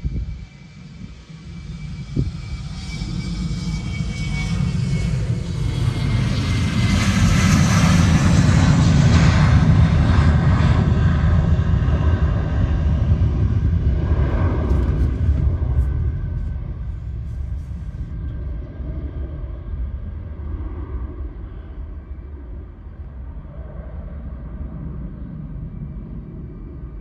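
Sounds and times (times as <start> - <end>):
jet engines spooling up: 13.3 - 19.8.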